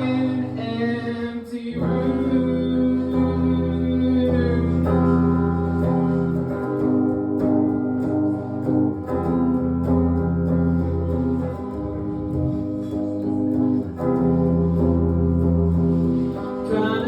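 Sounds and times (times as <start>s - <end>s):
person singing: 0.0s - 6.6s, 16.3s - 17.0s
guitar chords: 0.0s - 17.0s.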